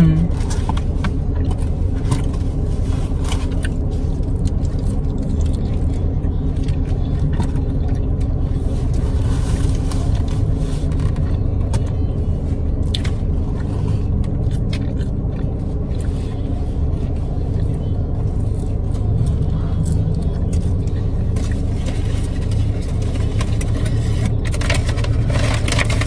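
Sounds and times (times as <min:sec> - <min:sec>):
car engine running: 0:00.0 - 0:26.0
food packaging rustling: 0:20.8 - 0:26.0.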